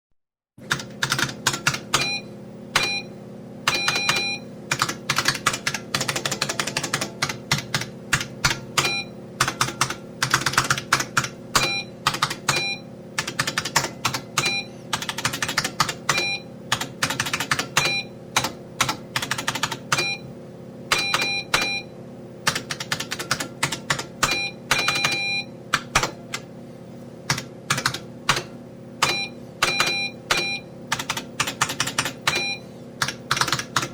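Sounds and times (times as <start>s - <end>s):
keyboard typing clicks: 0.6s - 2.2s, 3.7s - 20.2s, 20.9s - 21.8s, 22.5s - 26.4s, 27.3s - 33.9s
short electronic beeps: 2.0s - 3.1s, 3.7s - 4.5s, 12.5s - 12.9s, 16.1s - 16.5s, 21.0s - 21.9s, 24.2s - 25.5s, 29.0s - 30.7s, 32.3s - 32.7s.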